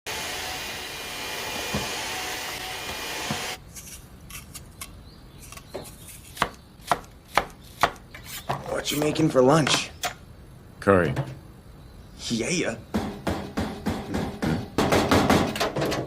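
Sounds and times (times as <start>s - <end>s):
knife chopping on wooden board: 5.7s - 8.0s.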